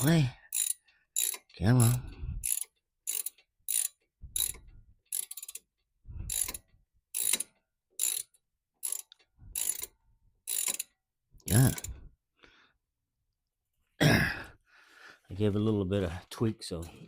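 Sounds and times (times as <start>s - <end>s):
torque wrench ratcheting clicks: 0.0s - 11.9s.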